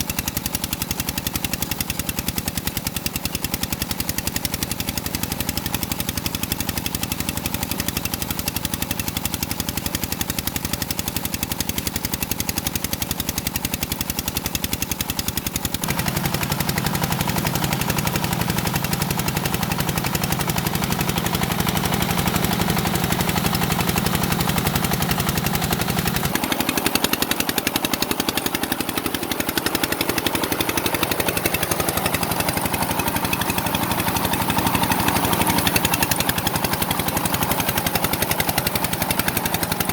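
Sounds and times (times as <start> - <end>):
engine running with rapid pulsing: 0.0 - 39.9.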